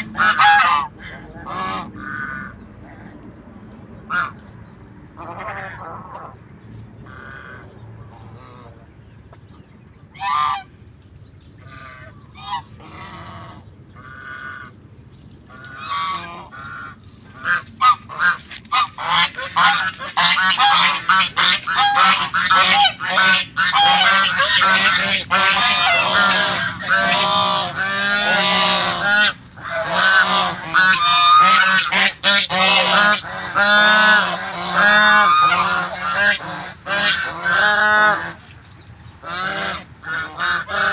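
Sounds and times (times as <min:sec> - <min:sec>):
geese honking: 0:00.0 - 0:03.1, 0:04.0 - 0:04.5, 0:05.1 - 0:06.4, 0:10.1 - 0:10.8, 0:11.6 - 0:14.8, 0:15.5 - 0:40.9.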